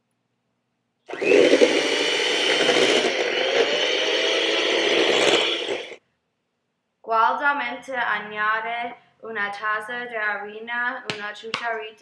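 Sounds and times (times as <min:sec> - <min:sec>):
electric hand mixer running: 0:01.1 - 0:06.0.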